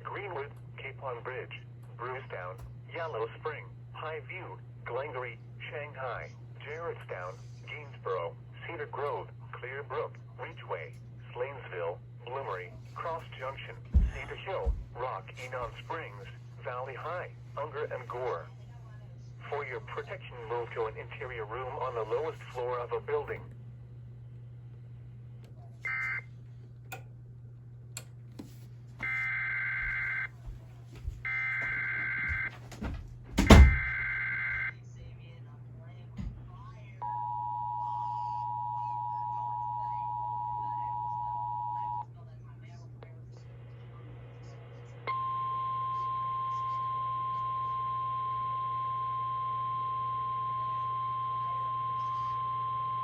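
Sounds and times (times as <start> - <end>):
steady low hum: 0.0 - 53.0
steady alarm tone: 29.0 - 30.3, 31.2 - 34.7.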